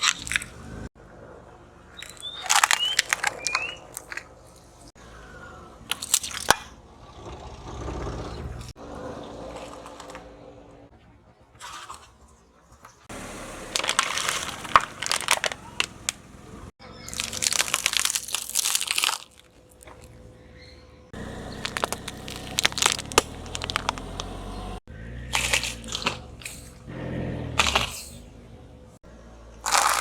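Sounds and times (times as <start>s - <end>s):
objects crushed under car tyre: 2.0s - 4.3s, 13.2s - 16.2s, 17.0s - 20.1s, 21.2s - 24.4s, 29.6s - 30.0s.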